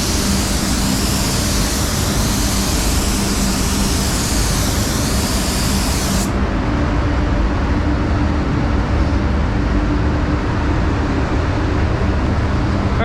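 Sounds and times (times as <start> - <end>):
spray gun hissing: 0.0 - 6.4
spray booth air flow hum: 0.0 - 13.0.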